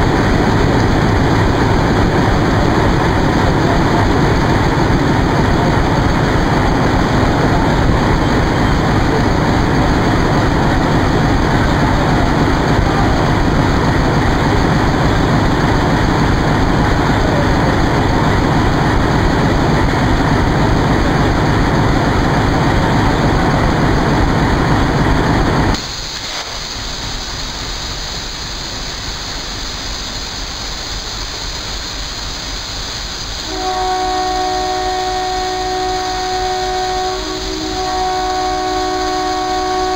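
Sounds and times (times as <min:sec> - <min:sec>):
diesel locomotive engine idling: 0:00.0 - 0:39.9
locomotive horn honking: 0:33.4 - 0:39.9.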